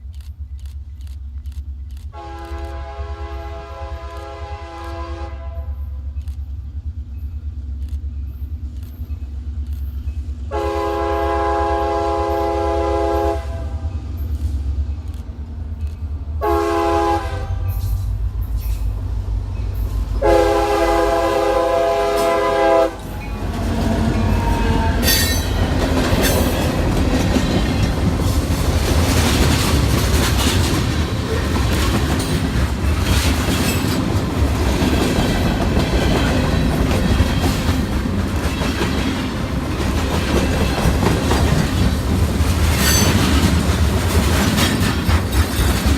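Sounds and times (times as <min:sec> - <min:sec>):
train wheels rattling on rails: 0:00.0 - 0:45.9
train horn: 0:02.2 - 0:06.0, 0:10.5 - 0:14.0, 0:16.4 - 0:18.0, 0:20.2 - 0:25.6.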